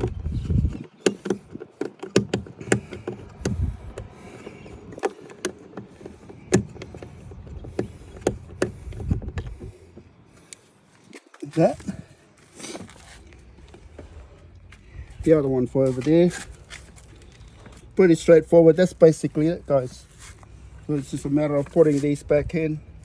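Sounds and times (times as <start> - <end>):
screwdriver clicking on metal parts: 0.8 - 9.6.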